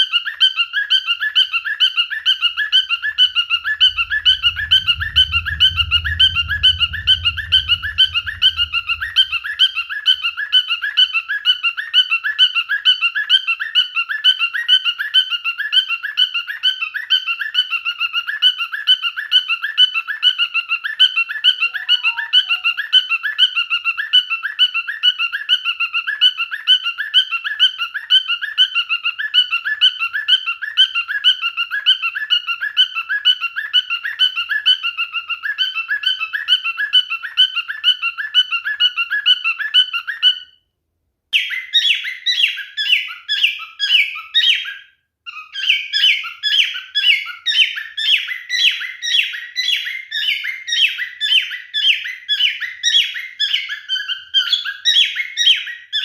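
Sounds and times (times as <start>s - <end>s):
cockatiel chirping: 21.5s - 22.9s, 41.4s - 56.0s
cockatiel downward-sliding calls: 21.5s - 22.9s.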